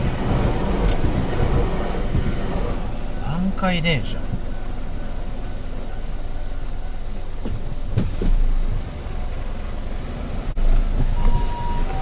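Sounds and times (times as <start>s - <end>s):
low rumble of vehicles: 0.0s - 12.0s
two-tone ambulance siren: 4.0s - 7.3s, 10.6s - 12.0s.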